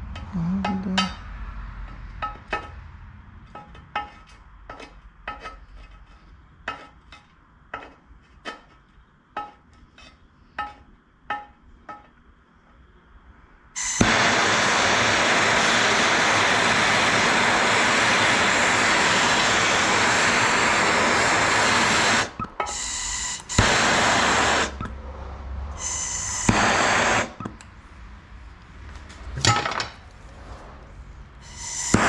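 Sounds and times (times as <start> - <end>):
gas torch flame hissing: 13.8 - 24.8, 25.8 - 27.4, 31.4 - 32.0.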